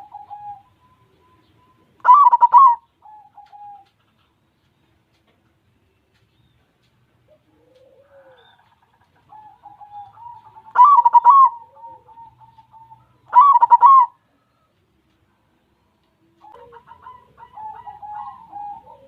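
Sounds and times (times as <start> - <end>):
dove cooing: 0.0 - 4.4, 7.2 - 14.7, 16.3 - 19.0.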